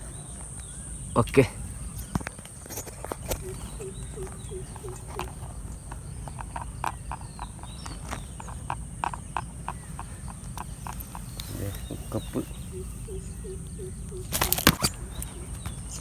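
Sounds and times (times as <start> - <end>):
high insect drone: 0.0 - 16.0
sharp clicks and taps: 2.0 - 12.4
short low calls: 11.2 - 16.0.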